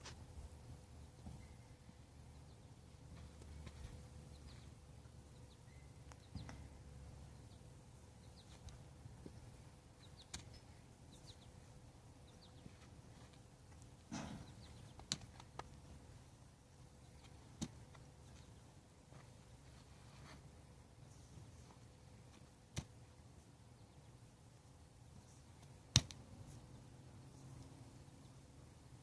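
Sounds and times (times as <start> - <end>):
faint bird chirps: 1.0 - 3.6, 4.2 - 8.7.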